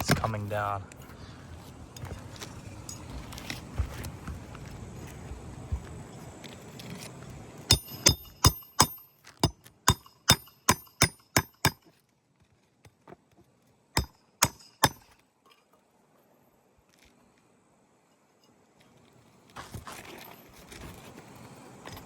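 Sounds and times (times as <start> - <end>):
hammer blows with metallic ring: 7.7 - 11.8, 14.0 - 15.1.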